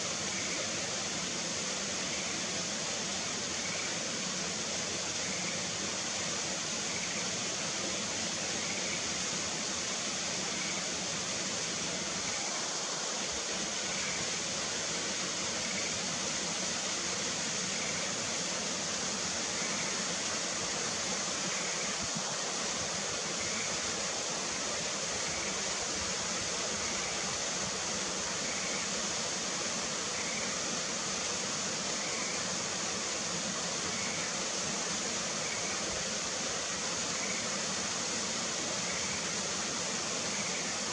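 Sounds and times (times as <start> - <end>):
falling water rushing: 0.0 - 40.9
tree frog calling: 32.0 - 32.4.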